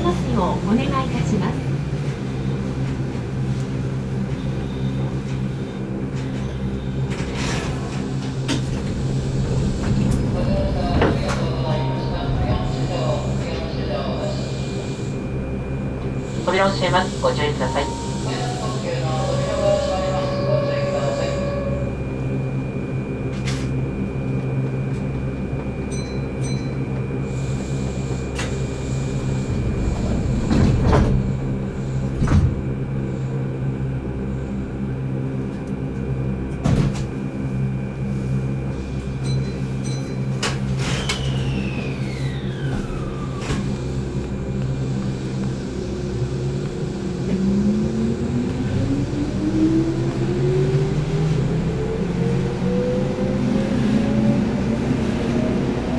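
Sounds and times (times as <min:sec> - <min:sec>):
train doors shutting: 0:00.0 - 0:55.9
train equipment humming: 0:00.0 - 0:55.9
traction motor whine: 0:07.9 - 0:24.6, 0:27.0 - 0:35.2, 0:40.4 - 0:55.9.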